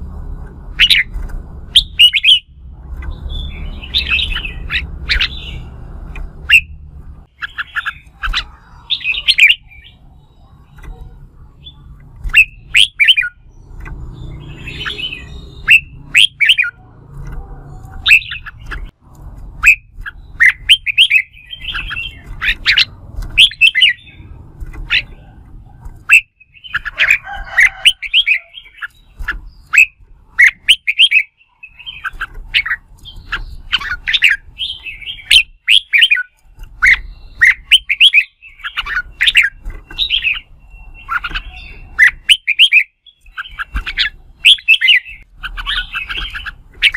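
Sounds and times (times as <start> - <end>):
birds chirping song: 0.0 - 46.9.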